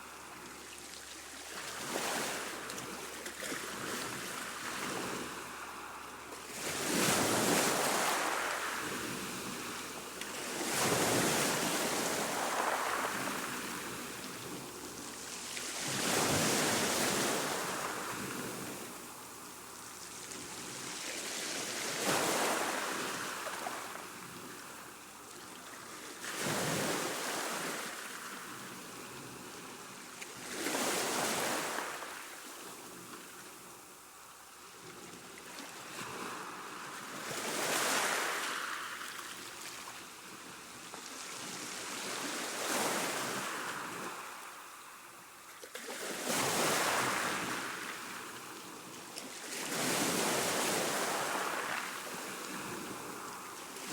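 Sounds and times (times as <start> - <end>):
sea waves washing in: 4.4 - 19.5.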